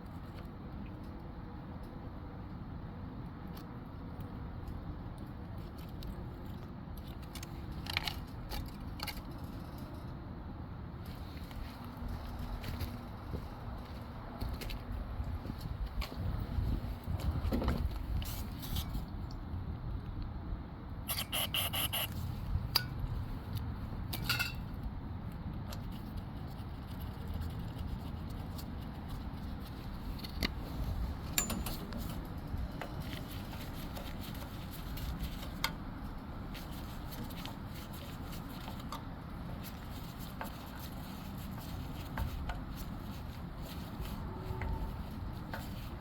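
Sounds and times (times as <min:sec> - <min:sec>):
steady low rumble: 0:09.4 - 0:21.1
sharp clicks and scrapes: 0:21.1 - 0:24.3.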